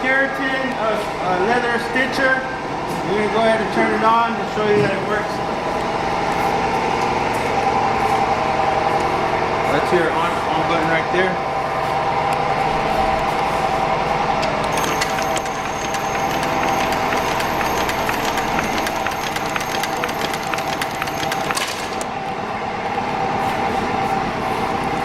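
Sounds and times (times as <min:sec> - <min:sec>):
stitching machine humming and clacking: 0:14.3 - 0:23.5.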